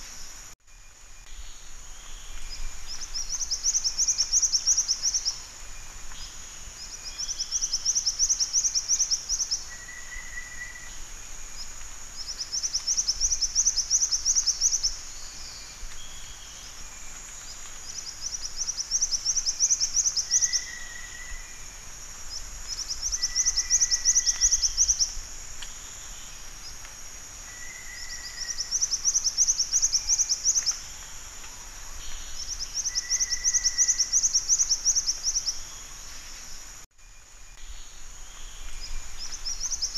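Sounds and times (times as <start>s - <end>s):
bird singing rapid trills: 32.2s - 35.7s.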